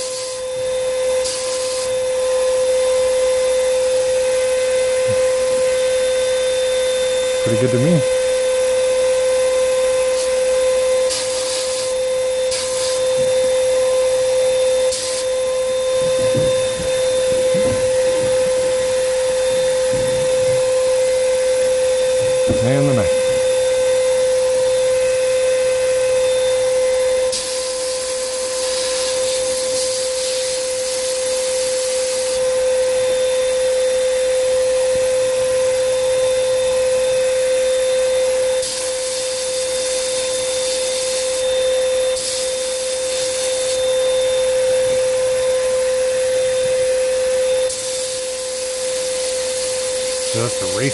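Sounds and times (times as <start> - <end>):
sandblaster hissing: 0.0 - 0.5, 1.2 - 1.9, 10.0 - 23.5, 27.3 - 32.4, 38.6 - 41.4, 42.1 - 43.8, 47.7 - 50.9
motor whine: 0.0 - 50.9
air and grit hiss: 11.1 - 13.2, 47.7 - 50.9.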